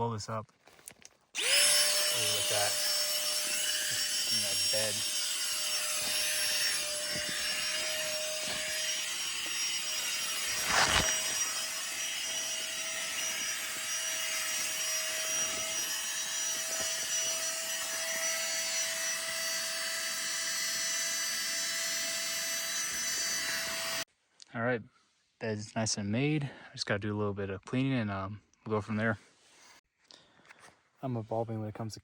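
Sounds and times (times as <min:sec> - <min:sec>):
electric air pump whirring: 0:01.4 - 0:24.0.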